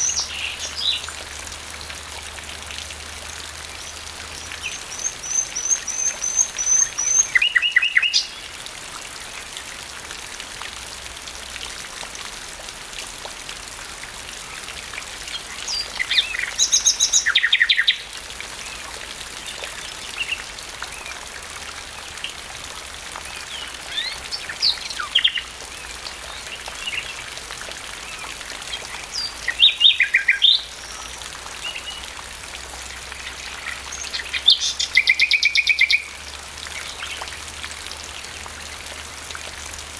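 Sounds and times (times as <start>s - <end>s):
nightingale singing: 0.0s - 1.2s, 4.4s - 8.4s, 28.1s - 32.0s, 33.5s - 36.1s
rain hiss: 0.0s - 39.9s.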